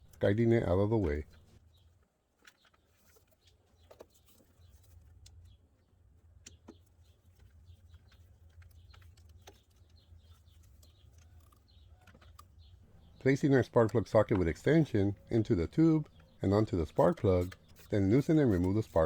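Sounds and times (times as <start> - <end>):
hand tools clicking and tapping: 13.1 - 19.0.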